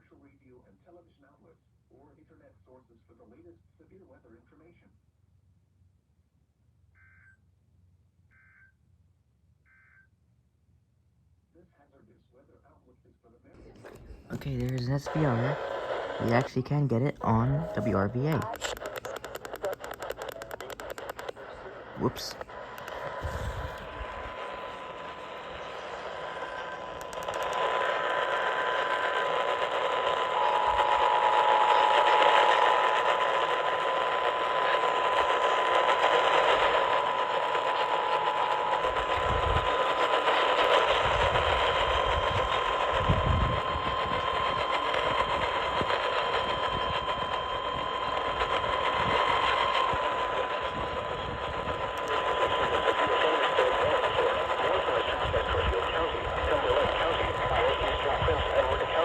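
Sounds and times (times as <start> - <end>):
radio static: 13.6 - 59.0.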